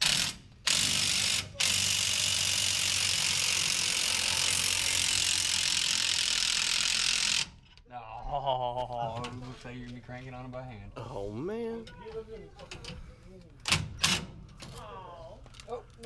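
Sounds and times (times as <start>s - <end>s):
power wrench running: 0.0s - 7.8s.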